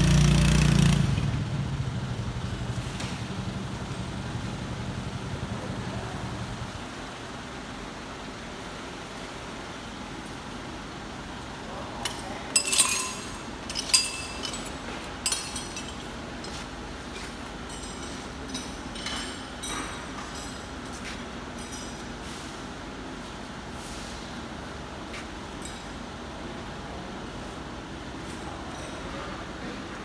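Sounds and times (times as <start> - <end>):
metal objects clinking: 12.0 - 20.6.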